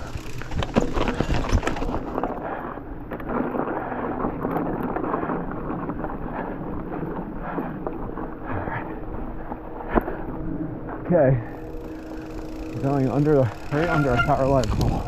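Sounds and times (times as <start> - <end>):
bike rattling over bumps: 0.0 - 15.0
bike tyres on snowy trail: 0.0 - 15.0
wind on microphone: 14.2 - 15.0.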